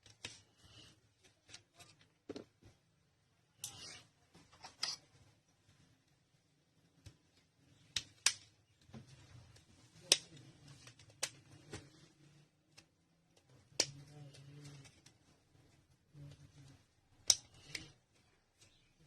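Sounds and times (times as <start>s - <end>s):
sharp plastic clicks and snaps: 7.0s - 8.9s, 10.0s - 11.4s, 12.7s - 15.1s, 17.2s - 17.9s.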